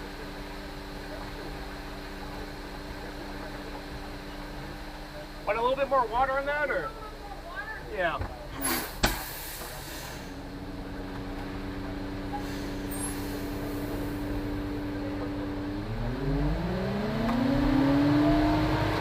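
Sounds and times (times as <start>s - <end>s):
diesel truck engine revving: 8.5s - 19.0s.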